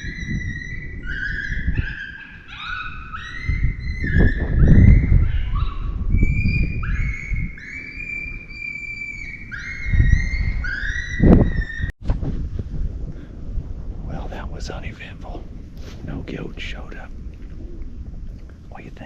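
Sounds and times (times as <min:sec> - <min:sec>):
electronic coyote pup cries: 0:00.0 - 0:11.8
wind on microphone: 0:00.0 - 0:19.0.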